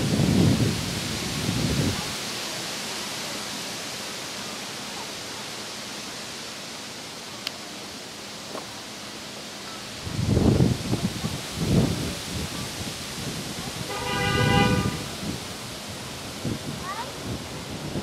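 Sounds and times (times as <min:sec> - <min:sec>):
wind buffeting microphone: 0:00.0 - 0:02.3, 0:10.0 - 0:18.0
wind hissing: 0:00.0 - 0:18.0.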